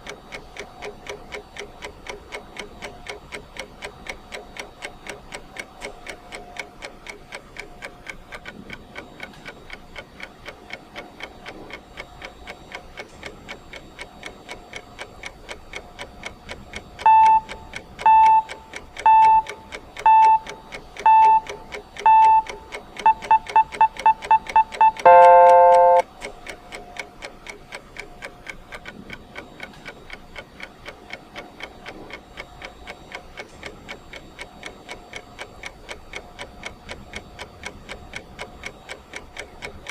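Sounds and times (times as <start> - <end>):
clock ticking: 0.0 - 39.9
electronic beeps: 17.0 - 26.0.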